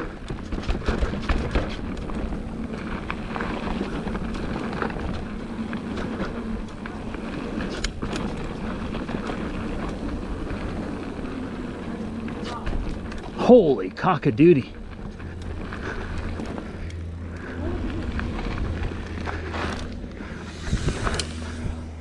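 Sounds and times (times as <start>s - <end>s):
bike clicks and rattles: 0.0s - 22.0s
bike tyres on dirt: 0.0s - 22.0s
wind rumble on microphone: 14.8s - 22.0s.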